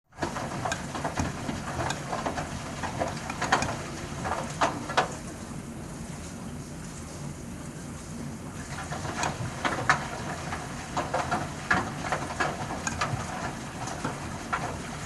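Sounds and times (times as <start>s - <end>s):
washing machine drum turning: 0.1s - 5.4s, 8.7s - 15.0s
water splashing: 0.1s - 6.4s, 8.6s - 15.0s
steady machine hum: 0.1s - 15.0s
knocks from tumbling load: 0.2s - 5.2s, 8.9s - 15.0s.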